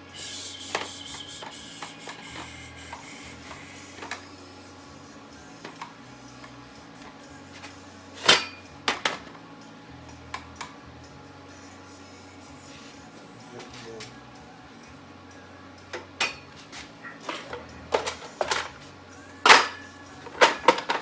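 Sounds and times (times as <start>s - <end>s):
welder arc hissing: 0.0s - 4.2s
steady hum: 0.0s - 21.0s.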